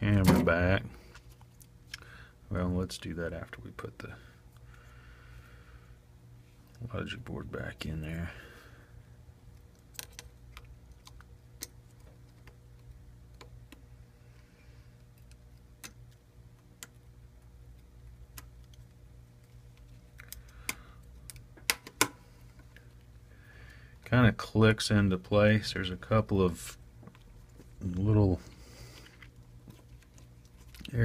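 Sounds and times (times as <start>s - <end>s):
phone parts clicking and tapping: 18.4s - 22.2s.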